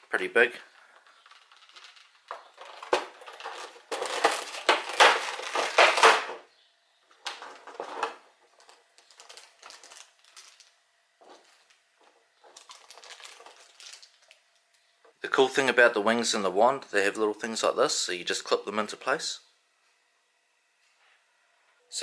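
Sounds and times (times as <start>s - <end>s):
plastic packaging crinkling: 0.8s - 6.2s, 7.2s - 14.8s.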